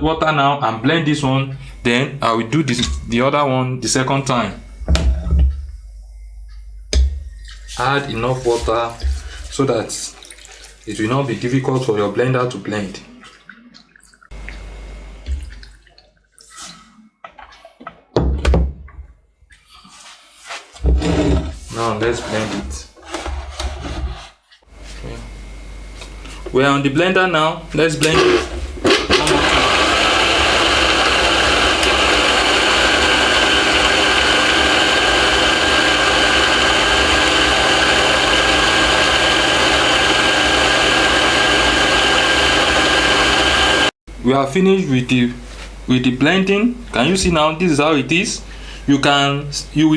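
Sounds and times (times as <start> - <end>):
blender motor whining: 0.8 - 3.2, 28.1 - 44.0
water poured into blender jar: 7.4 - 11.7.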